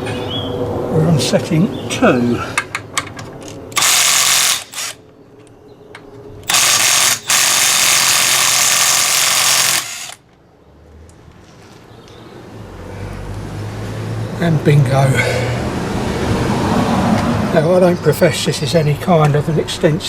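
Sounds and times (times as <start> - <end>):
impact wrench hammering: 3.8 - 5.0, 6.5 - 10.2.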